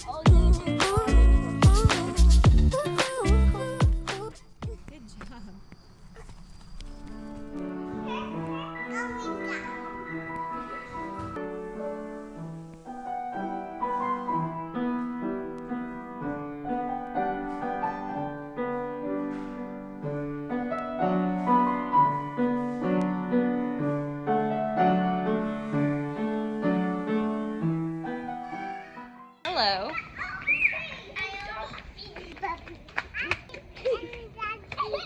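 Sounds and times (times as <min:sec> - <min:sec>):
piano music: 0:07.0 - 0:29.4.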